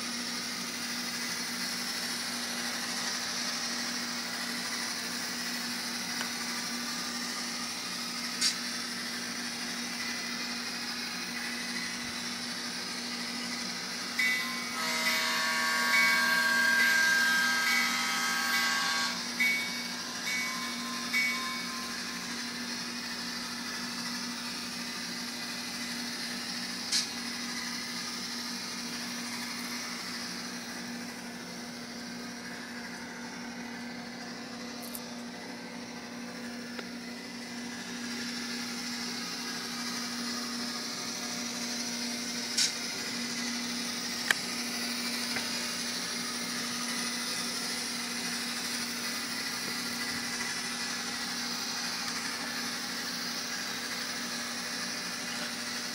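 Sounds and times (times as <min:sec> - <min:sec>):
diesel engine sound from tiny speaker: 0:00.0 - 0:55.9
model motor and gears whirring: 0:00.0 - 0:55.9.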